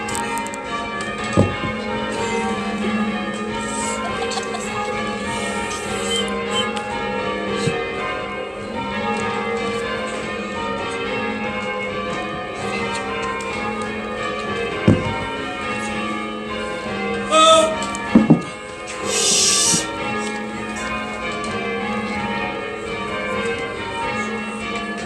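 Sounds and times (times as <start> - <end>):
church bells change ringing: 0.0 - 19.2, 19.8 - 25.0
thump: 1.4 - 1.8, 14.9 - 15.3, 18.2 - 18.5.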